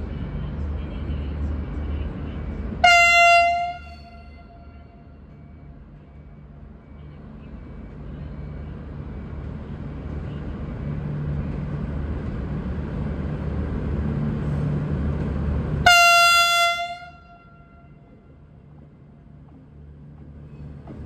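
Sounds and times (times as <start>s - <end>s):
diesel train engines rumbling: 0.0s - 21.0s
train horn blast: 2.8s - 5.2s, 15.8s - 18.2s.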